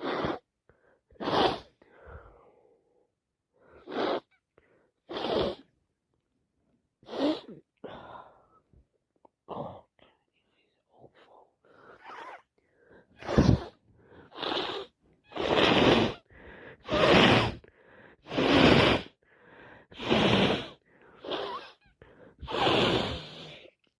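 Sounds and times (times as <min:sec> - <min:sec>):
wet nose blowing bursts: 0:00.0 - 0:00.5, 0:01.2 - 0:01.8, 0:03.7 - 0:04.3, 0:05.1 - 0:05.7, 0:07.0 - 0:07.6, 0:13.2 - 0:19.2, 0:19.8 - 0:21.8, 0:22.4 - 0:23.7
quiet breaths: 0:00.6 - 0:05.7, 0:07.3 - 0:24.0.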